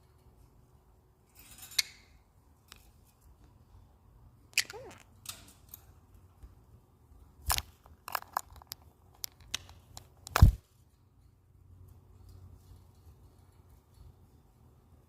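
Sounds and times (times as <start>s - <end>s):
sharp clicks and crackles: 7.5s - 10.6s.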